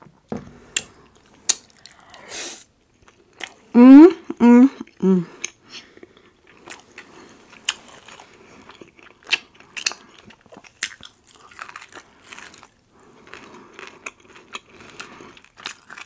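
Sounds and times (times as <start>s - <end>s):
person chewing and crunching: 2.9s - 3.7s, 4.8s - 16.0s.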